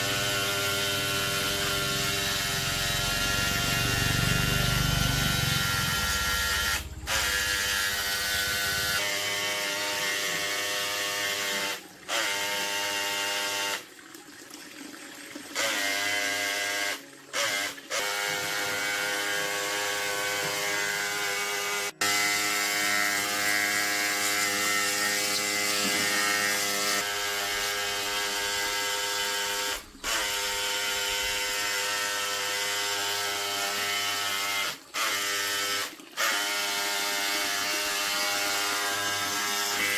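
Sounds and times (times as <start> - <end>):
small electric motor running: 0.0 - 13.9, 15.6 - 39.9.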